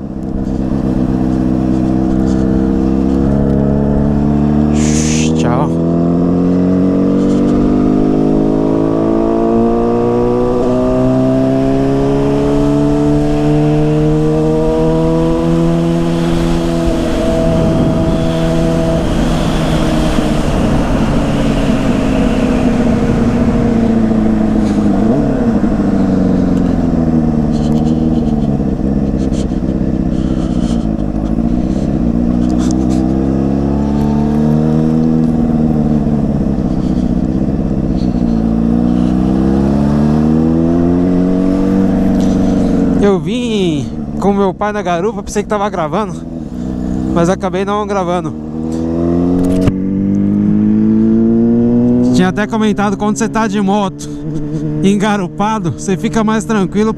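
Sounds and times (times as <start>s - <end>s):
motorcycle engine revving: 0.0s - 56.9s
wind rushing: 14.8s - 27.3s.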